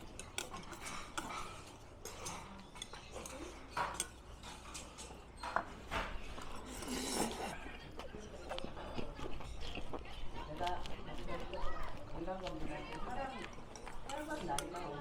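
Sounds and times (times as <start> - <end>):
cutlery clinking on dishes: 0.0 - 9.8, 13.7 - 15.0.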